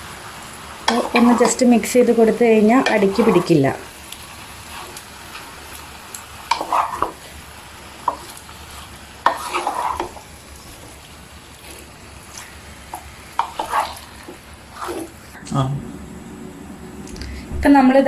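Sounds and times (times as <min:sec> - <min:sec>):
chicken sizzling: 0:00.0 - 0:18.0
spoon scraping pan: 0:00.9 - 0:01.7, 0:02.8 - 0:03.8, 0:06.4 - 0:07.3, 0:08.0 - 0:11.0, 0:11.6 - 0:15.3.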